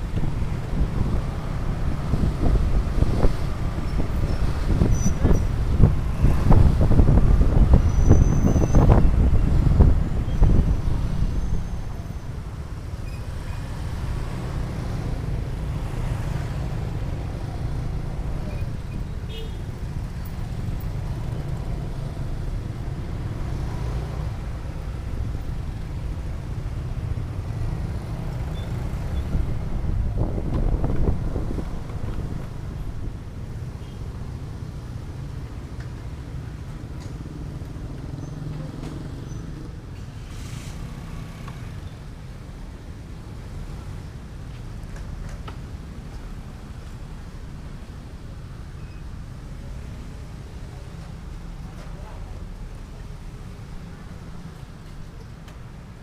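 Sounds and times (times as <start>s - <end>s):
wind buffeting microphone: 0.0s - 12.0s, 29.2s - 33.3s
motorcycle road rumble: 0.0s - 56.0s.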